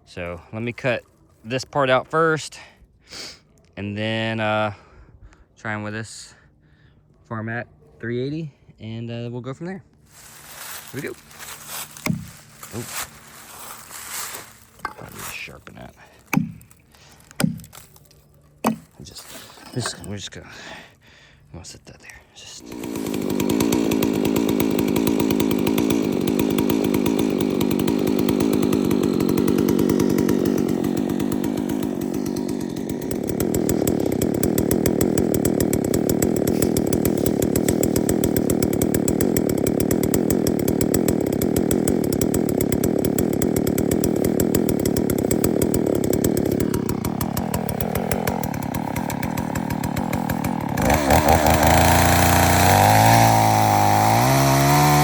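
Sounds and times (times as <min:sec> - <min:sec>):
chainsaw cutting log: 0:10.1 - 0:20.4, 0:22.6 - 0:55.0.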